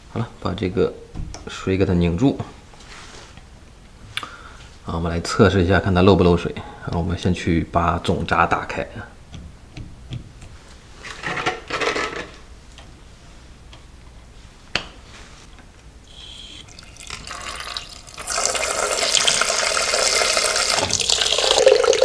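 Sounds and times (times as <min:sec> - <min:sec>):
handling knocks: 0:01.1 - 0:01.5
water running from sink tap: 0:16.5 - 0:22.0.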